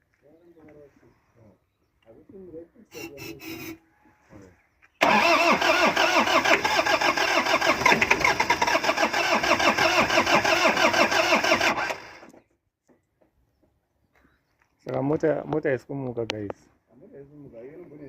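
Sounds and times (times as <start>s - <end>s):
truck engine cranking on starter: 5.0s - 12.4s.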